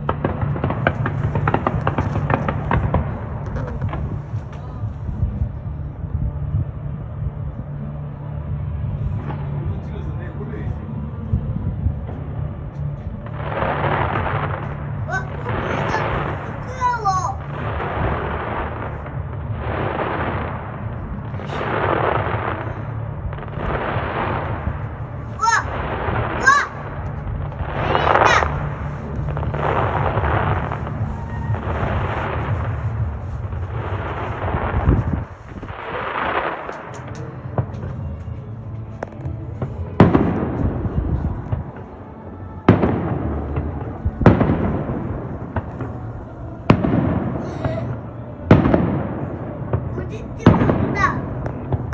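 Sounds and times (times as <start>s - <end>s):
fireworks booming: 0.0s - 6.9s, 11.3s - 51.9s
rolling rumble and crackle: 0.0s - 51.9s
faint firework pops: 28.3s - 38.0s.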